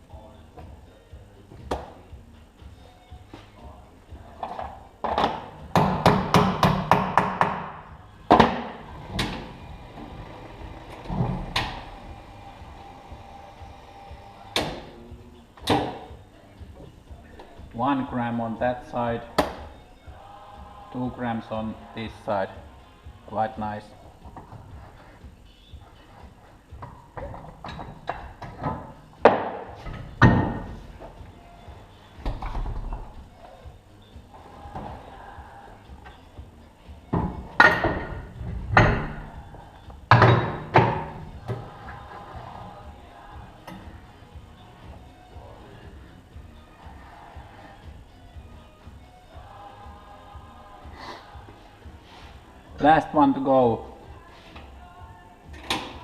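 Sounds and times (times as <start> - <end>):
hammer tapping on metal: 5.7 - 7.8
metal knocks and clanks: 26.8 - 30.8, 37.2 - 39.4.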